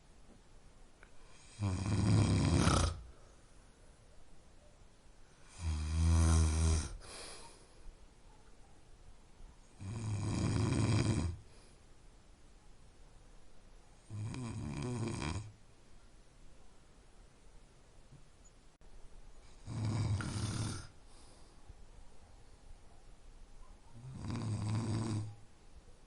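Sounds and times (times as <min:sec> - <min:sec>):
person snoring: 0:01.3 - 0:03.1, 0:05.4 - 0:07.2, 0:09.8 - 0:11.4, 0:14.1 - 0:15.5, 0:19.6 - 0:21.0, 0:24.1 - 0:25.3.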